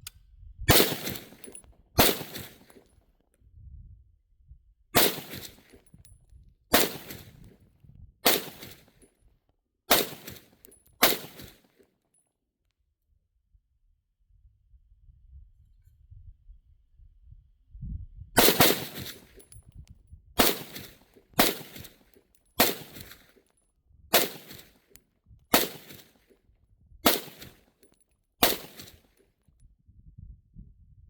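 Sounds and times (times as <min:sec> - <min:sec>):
pistol shots with echo: 0:00.7 - 0:02.8, 0:05.0 - 0:05.7, 0:06.7 - 0:07.4, 0:08.2 - 0:08.9, 0:09.9 - 0:11.6, 0:18.4 - 0:19.4, 0:20.4 - 0:22.0, 0:22.6 - 0:23.2, 0:24.1 - 0:24.8, 0:25.5 - 0:26.1, 0:27.0 - 0:27.6, 0:28.4 - 0:29.0.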